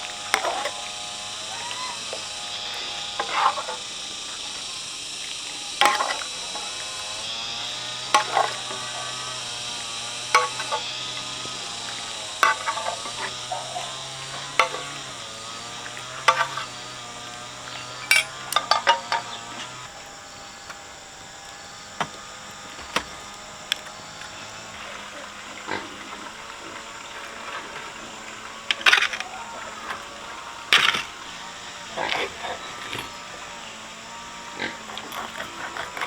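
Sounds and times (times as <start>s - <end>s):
utensil knocking and scraping a pot: 10.4s - 10.8s.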